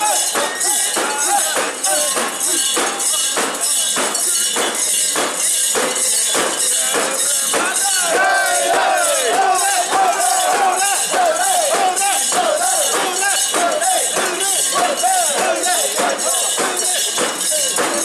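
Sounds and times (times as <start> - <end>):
people chanting: 0.0 - 3.1, 7.5 - 18.0
metal fittings jangling: 0.0 - 18.0.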